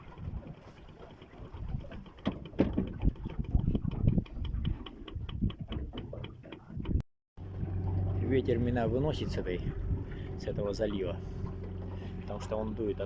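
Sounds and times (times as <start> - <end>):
wind on microphone: 0.0 - 0.6, 1.3 - 11.6
low knocks on boat: 1.2 - 7.0.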